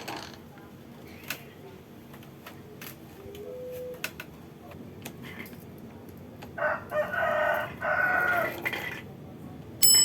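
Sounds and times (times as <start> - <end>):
rooster crowing: 6.6 - 8.6.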